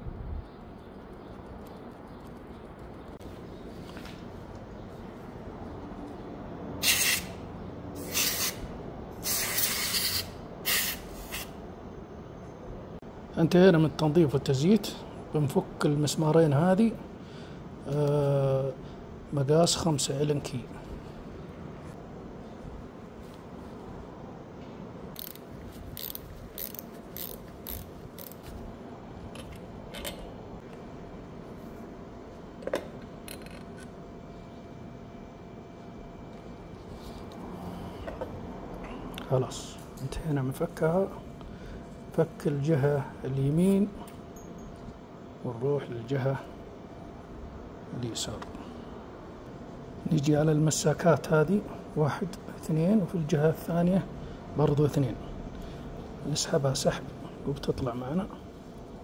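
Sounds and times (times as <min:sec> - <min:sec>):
aerosol spray can hissing: 0:06.8 - 0:07.3, 0:08.0 - 0:08.6, 0:09.2 - 0:11.5
allen key clicking on bolts: 0:25.2 - 0:28.5.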